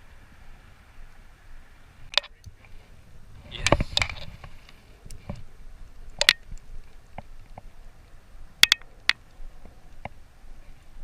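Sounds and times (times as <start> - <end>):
sharp clicks and knocks: 6.1 - 7.7.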